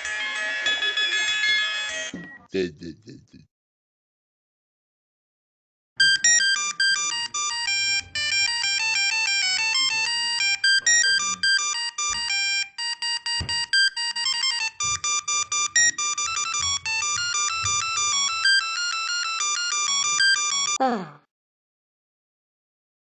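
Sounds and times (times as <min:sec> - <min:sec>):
polyphonic phone ringtone: 0:00.0 - 0:02.5, 0:06.0 - 0:20.8.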